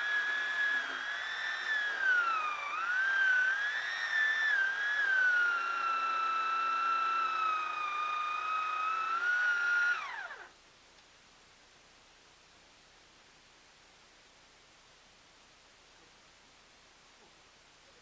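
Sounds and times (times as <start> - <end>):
chainsaw running at high revs: 0.0 - 10.5.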